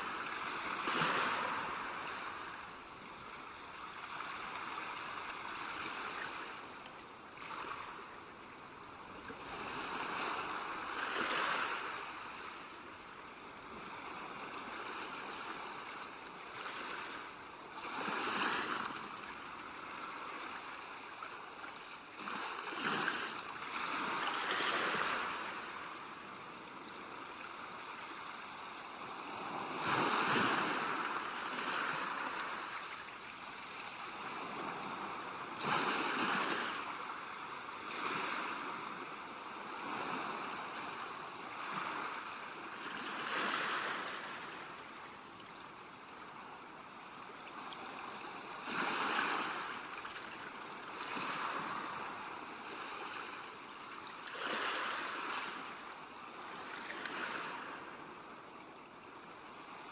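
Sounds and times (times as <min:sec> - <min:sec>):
ocean waves breaking: 0:00.0 - 0:02.8, 0:22.2 - 0:26.0, 0:28.9 - 0:44.8.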